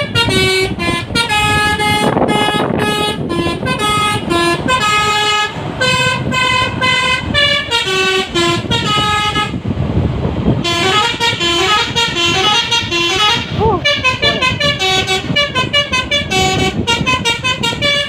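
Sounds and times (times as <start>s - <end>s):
musical bus horn tune: 0.0s - 9.7s, 10.5s - 18.0s
road and engine noise: 0.0s - 18.0s.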